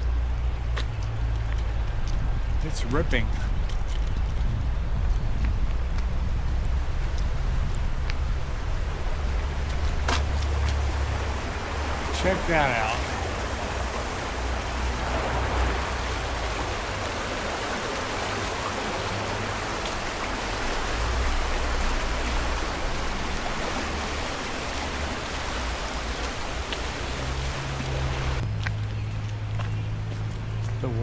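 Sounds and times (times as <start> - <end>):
low rumble: 0.0 - 12.2
floodwater rushing: 6.3 - 28.4.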